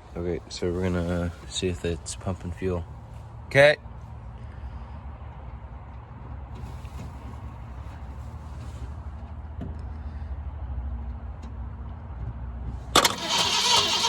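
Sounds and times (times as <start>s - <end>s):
engine cranking on starter: 12.9s - 14.0s.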